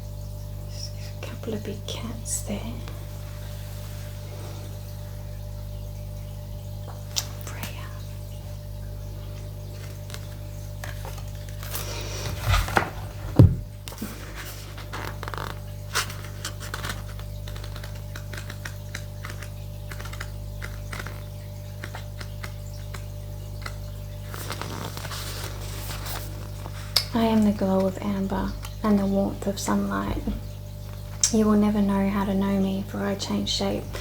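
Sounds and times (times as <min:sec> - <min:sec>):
steady low hum: 0:00.0 - 0:34.0
objects being handled: 0:09.8 - 0:27.2
loud knocks: 0:12.5 - 0:13.7.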